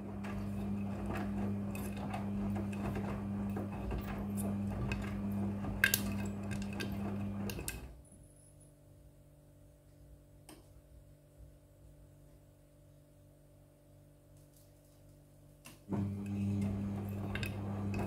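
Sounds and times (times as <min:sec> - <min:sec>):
washing machine motor humming: 0:00.0 - 0:08.0, 0:15.9 - 0:18.0.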